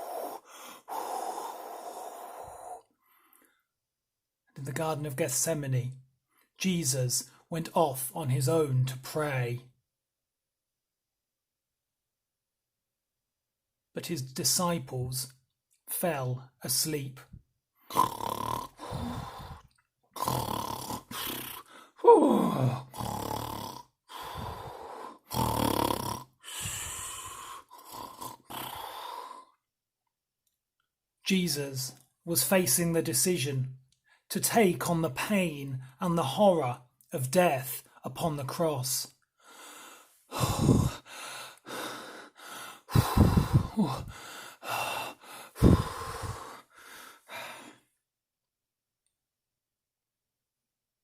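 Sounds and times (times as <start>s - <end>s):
person snoring: 0.0s - 2.9s, 17.9s - 29.6s, 40.3s - 47.7s
person gasping heavily: 0.0s - 3.6s, 18.8s - 19.7s, 21.1s - 23.1s, 24.1s - 25.4s, 26.4s - 27.8s, 39.4s - 47.9s.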